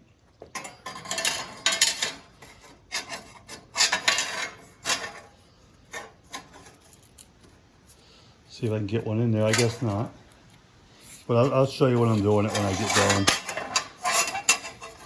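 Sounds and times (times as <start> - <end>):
steel plates scraping together: 0.6 - 7.1, 9.4 - 10.2, 11.0 - 15.0.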